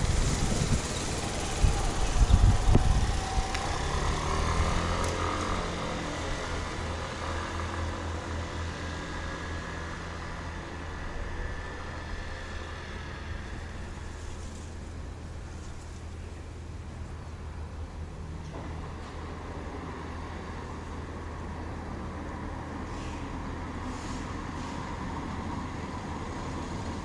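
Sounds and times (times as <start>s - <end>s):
train rumble: 0.0s - 18.0s.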